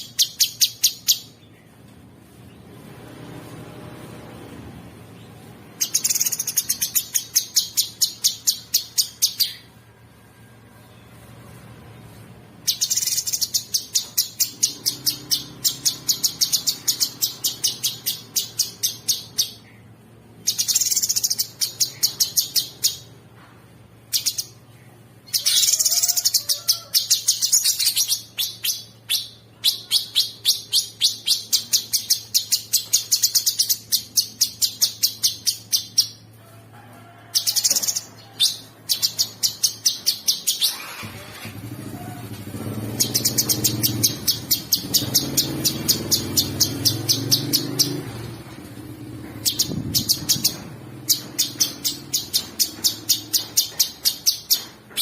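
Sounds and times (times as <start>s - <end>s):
songbird singing rattling runs: 42.6s - 55.0s.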